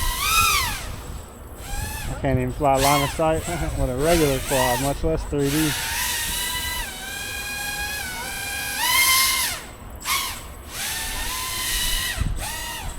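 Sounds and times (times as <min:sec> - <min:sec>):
drone motors whining: 0:00.0 - 0:12.9.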